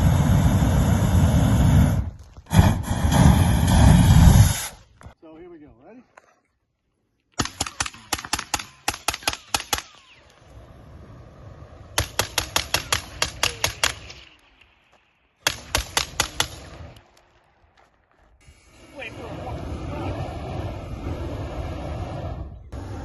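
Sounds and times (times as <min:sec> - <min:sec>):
flamethrower rattling snaps: 0:07.4 - 0:14.7, 0:15.4 - 0:17.9
low rushing sound: 0:18.4 - 0:23.0.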